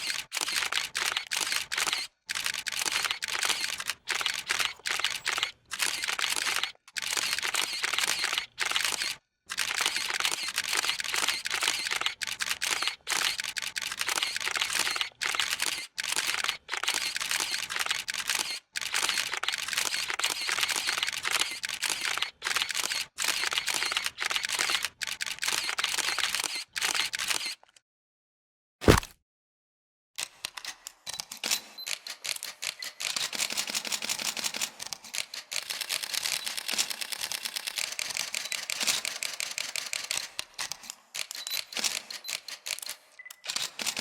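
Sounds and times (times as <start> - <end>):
camera shutter clicking: 0.0 - 27.7, 28.8 - 29.1.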